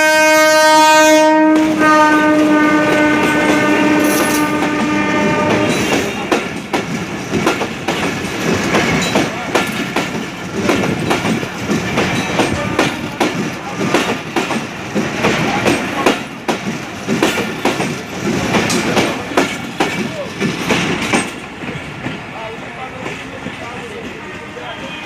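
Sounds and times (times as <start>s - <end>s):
rumble of moving train: 0.0s - 25.0s
wheels clacking over rail joints: 1.5s - 25.0s.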